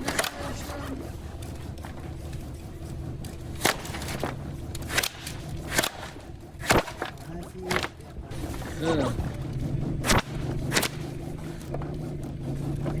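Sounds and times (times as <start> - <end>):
steady low hum: 0.0 - 13.0
sharp knocks: 3.2 - 8.8.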